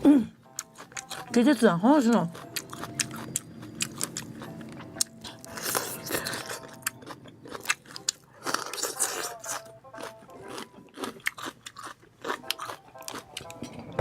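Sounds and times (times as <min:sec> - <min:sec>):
person chewing crunchy food: 0:00.5 - 0:01.4, 0:02.0 - 0:14.0.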